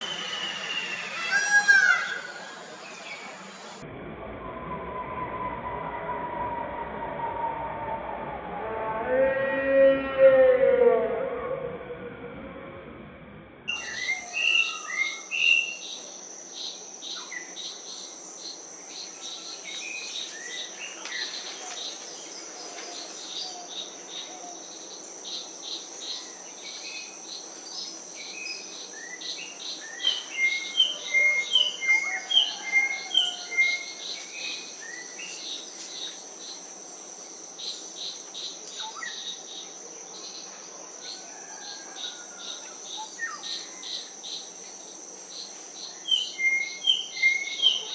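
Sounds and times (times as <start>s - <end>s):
high-pitched insect drone: 0.0s - 3.8s, 13.7s - 40.5s.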